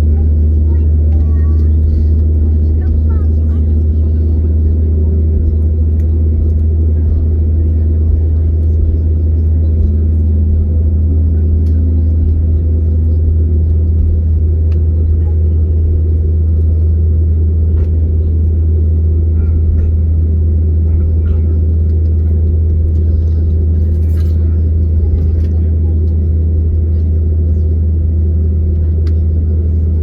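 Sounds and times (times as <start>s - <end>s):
airplane cabin engine drone: 0.0s - 30.0s
faint clicks and rattles: 20.8s - 27.6s.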